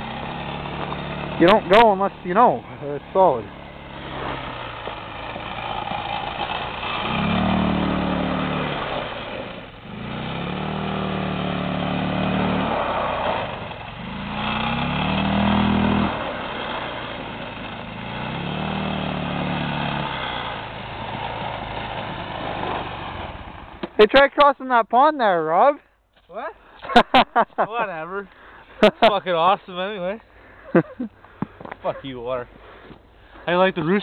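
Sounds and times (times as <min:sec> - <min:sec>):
engine revving hard: 0:00.0 - 0:23.5.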